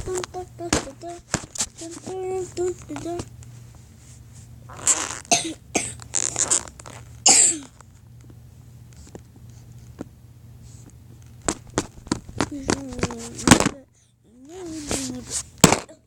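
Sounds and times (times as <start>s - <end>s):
person coughing harshly: 5.3s - 6.0s, 7.3s - 7.8s.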